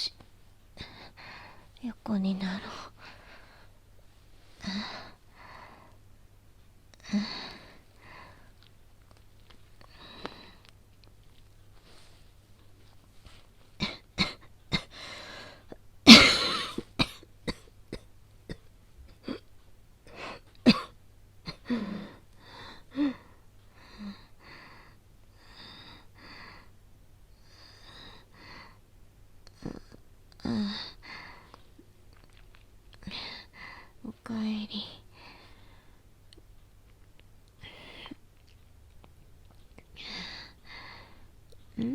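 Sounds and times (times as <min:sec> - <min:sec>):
woman coughing: 0:13.8 - 0:15.0, 0:16.1 - 0:19.4, 0:20.6 - 0:21.8
wheezy laboured breaths: 0:21.6 - 0:26.8, 0:40.0 - 0:41.3.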